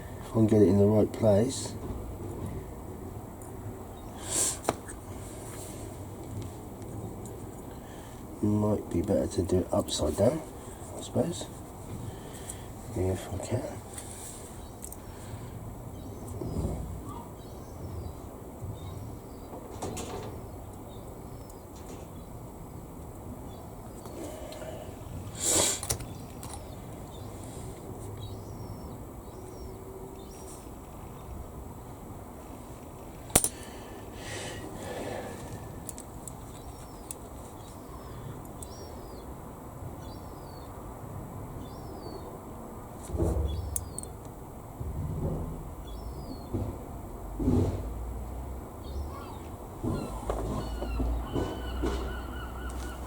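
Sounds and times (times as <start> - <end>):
low steady background hum: 0.0 - 53.0
bird chirping: 28.2 - 31.4, 48.8 - 53.0.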